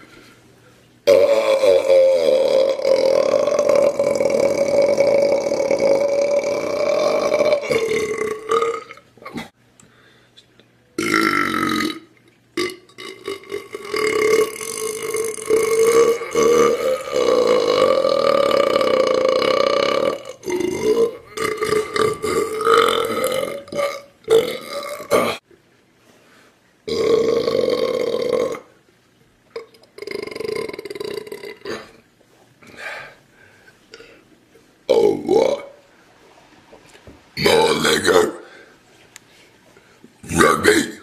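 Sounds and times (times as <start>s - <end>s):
person belching: 1.0s - 9.5s, 11.0s - 25.4s, 26.9s - 28.7s, 29.5s - 32.0s.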